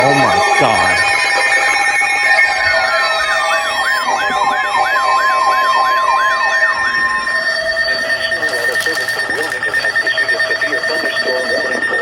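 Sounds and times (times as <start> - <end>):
warbling alert alarm: 0.0 - 1.3
steady warning tone: 0.0 - 1.7, 6.7 - 12.0.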